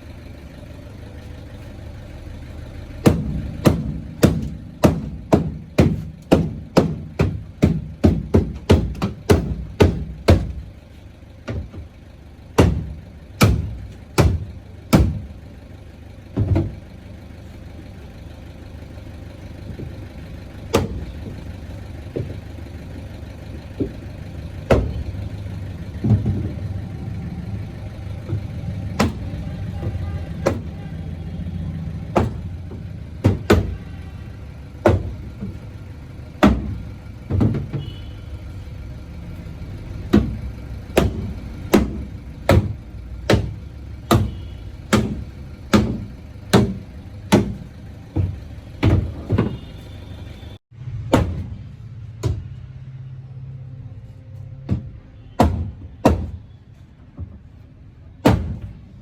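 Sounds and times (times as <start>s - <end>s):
hammer knocking on metal panel: 3.1s - 10.6s.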